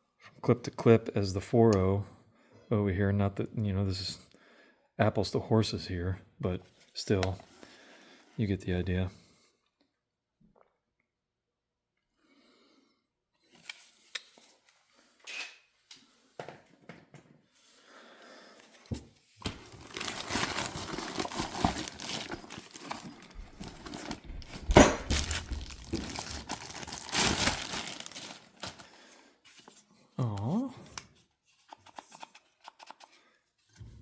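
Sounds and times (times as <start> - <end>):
plastic and cardboard crinkling: 19.4 - 29.8
hard objects knocking: 23.4 - 26.3.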